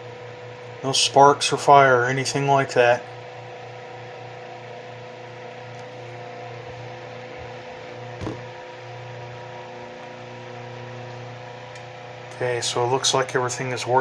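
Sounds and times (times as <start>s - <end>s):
electric fan motor hum: 0.0s - 14.0s
short knock: 8.2s - 8.5s.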